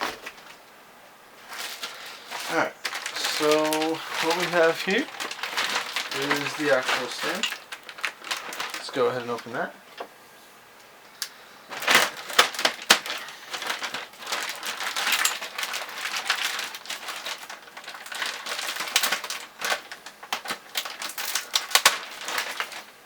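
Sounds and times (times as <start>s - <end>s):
packaging crinkling and rustling: 0.0s - 0.7s, 1.4s - 10.1s, 11.7s - 23.0s.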